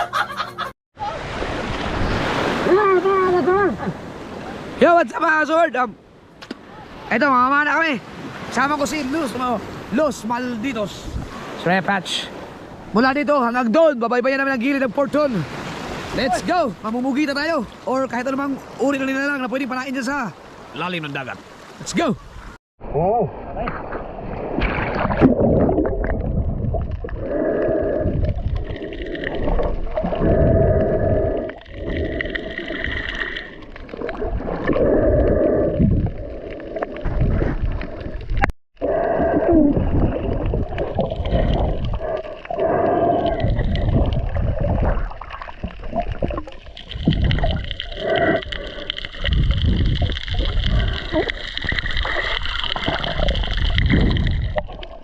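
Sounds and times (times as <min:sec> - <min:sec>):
muffled underwater rushing and gurgling: 0:23.4 - 0:55.0.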